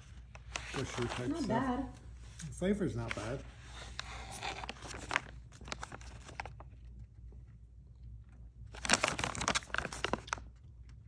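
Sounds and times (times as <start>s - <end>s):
candy wrapper crinkling: 0.4s - 1.7s, 2.9s - 6.8s, 8.7s - 10.6s.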